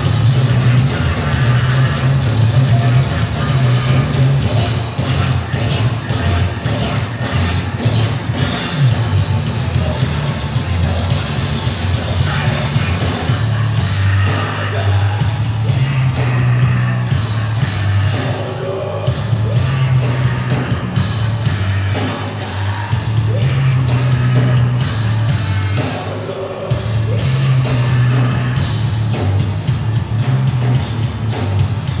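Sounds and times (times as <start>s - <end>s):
heavy metal band playing: 0.0s - 32.0s
sung and shouted vocals: 9.7s - 25.0s.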